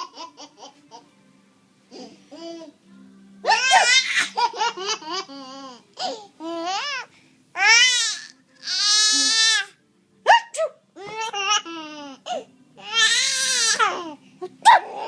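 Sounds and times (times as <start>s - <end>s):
baby laughing and squealing: 3.5s - 7.0s.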